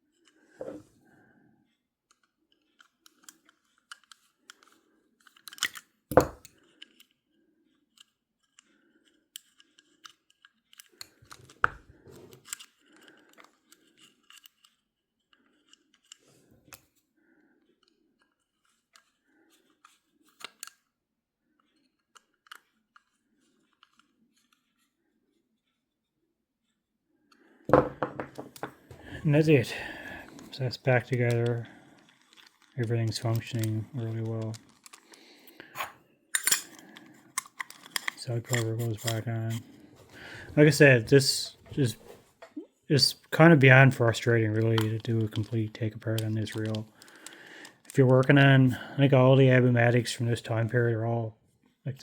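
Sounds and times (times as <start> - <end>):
metallic clicks and scrapes: 2.1 - 16.9, 21.6 - 25.0, 28.4 - 42.1, 43.3 - 48.7.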